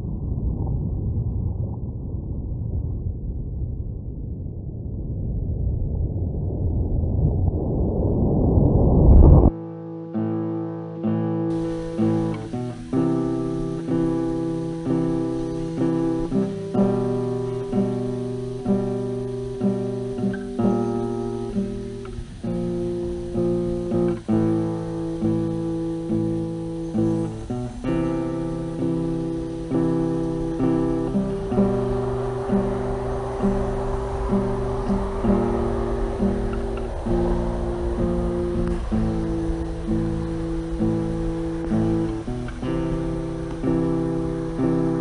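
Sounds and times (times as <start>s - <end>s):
acoustic guitar strumming chords: 9.6s - 45.0s.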